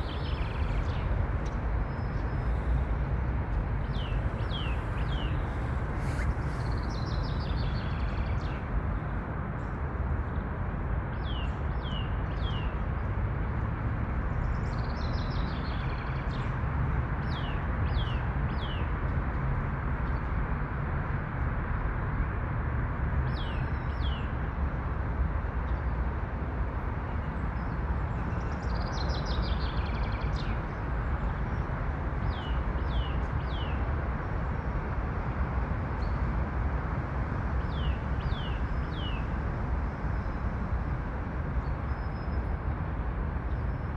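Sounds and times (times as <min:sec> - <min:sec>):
songbirds singing: 0:00.0 - 0:09.2, 0:11.1 - 0:13.5, 0:14.2 - 0:19.0, 0:23.3 - 0:24.5, 0:27.0 - 0:36.3, 0:37.0 - 0:40.5, 0:41.5 - 0:42.7.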